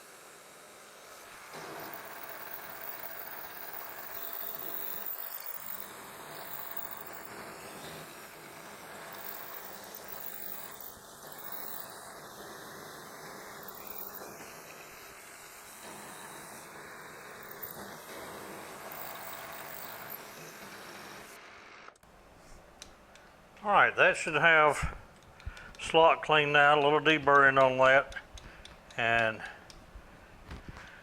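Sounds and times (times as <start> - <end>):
milling machine cutting metal: 0.0 - 21.4.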